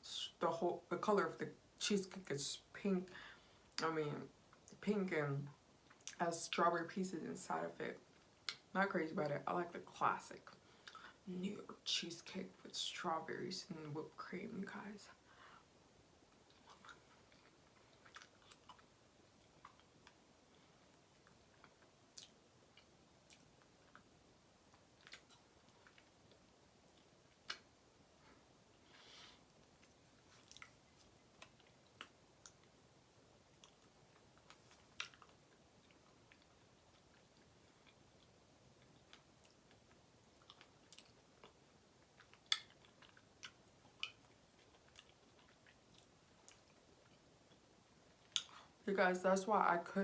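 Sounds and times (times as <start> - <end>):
wet chewing mouth sounds: 16.3 - 20.2, 21.2 - 24.1, 24.7 - 27.7, 29.6 - 32.7, 33.5 - 47.6
soft mouth clicks: 27.0 - 27.7, 48.3 - 48.6.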